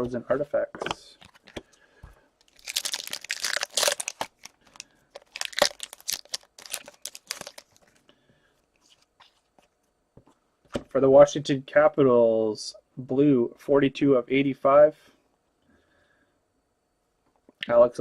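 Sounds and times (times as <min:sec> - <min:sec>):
plastic packaging crinkling: 0:02.4 - 0:08.0.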